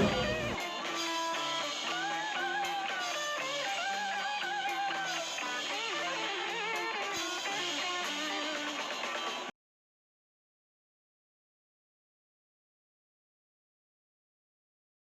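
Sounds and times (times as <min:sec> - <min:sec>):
bass line: 0:00.0 - 0:00.6
guitar instrumental music: 0:00.0 - 0:09.5.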